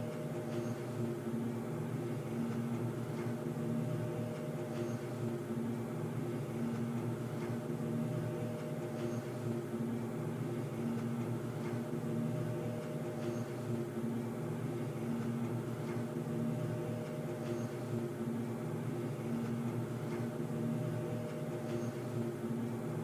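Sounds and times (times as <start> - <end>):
low mechanical hum: 0.0 - 23.0.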